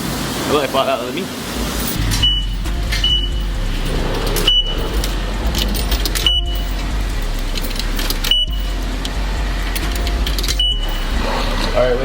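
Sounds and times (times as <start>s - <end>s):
car wash rumble and hiss: 0.0s - 12.0s
short high beep: 2.0s - 3.4s.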